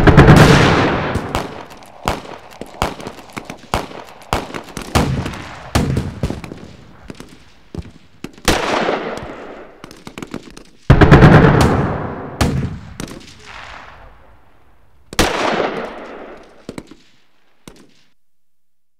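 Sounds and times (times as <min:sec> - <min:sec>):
automatic gunfire bursts: 0:00.0 - 0:06.6
heavy blast: 0:00.0 - 0:09.4
rifle shots: 0:00.0 - 0:14.3, 0:15.1 - 0:18.1.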